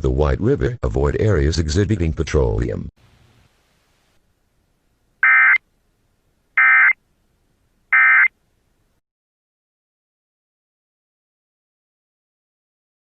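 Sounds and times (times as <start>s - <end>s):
screechy digital data bursts: 8.0s - 8.3s.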